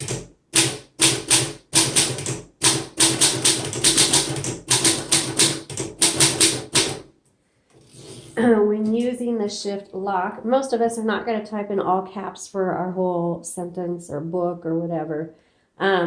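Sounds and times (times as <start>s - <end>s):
typewriter keys clacking: 0.0s - 7.0s.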